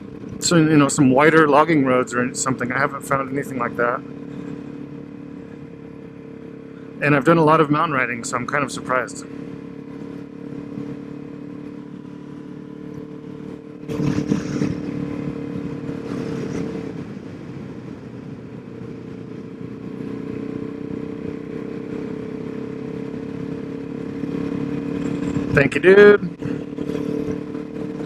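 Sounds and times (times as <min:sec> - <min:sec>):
motorcycle engine running: 0:00.0 - 0:28.0.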